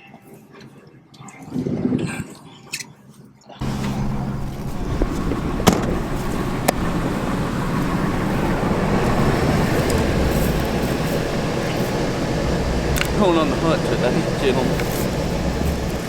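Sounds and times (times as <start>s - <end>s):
truck engine and road rumble: 3.6s - 16.0s.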